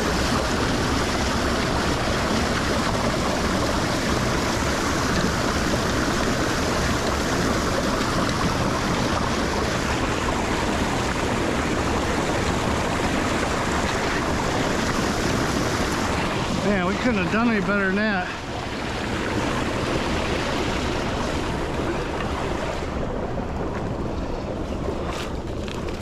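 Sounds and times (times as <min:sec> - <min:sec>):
water rushing into a drain: 0:00.0 - 0:26.0.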